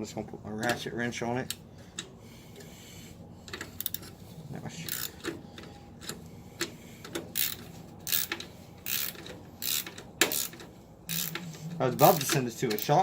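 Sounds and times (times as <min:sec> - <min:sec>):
ratchet wrench clicking: 0:03.5 - 0:04.1, 0:04.9 - 0:05.3, 0:07.0 - 0:13.0.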